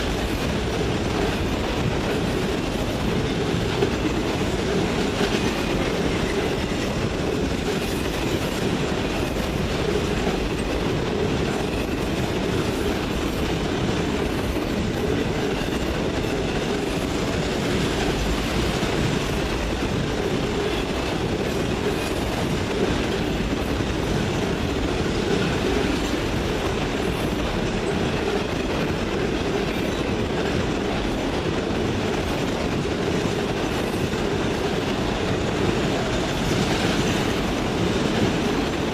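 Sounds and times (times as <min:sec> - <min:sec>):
freight train rolling by: 0:00.0 - 0:38.9.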